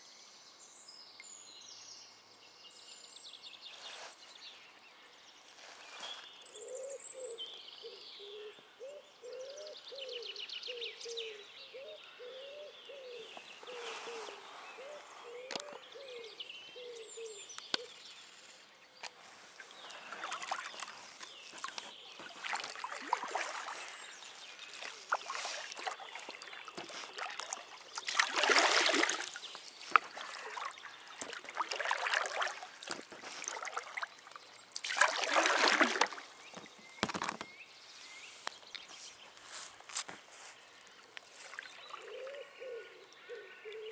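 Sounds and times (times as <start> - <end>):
birds chirping: 3.3 - 43.9
paddle strokes splashing water: 19.0 - 37.4.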